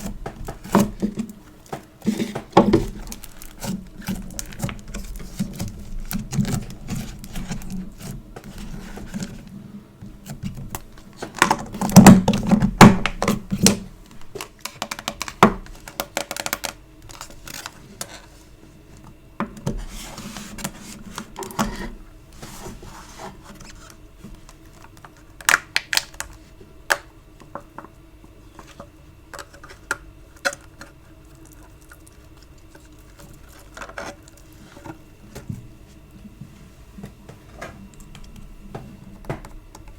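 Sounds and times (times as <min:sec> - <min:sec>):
sticky clay crackles and pops: 0:24.5 - 0:27.1.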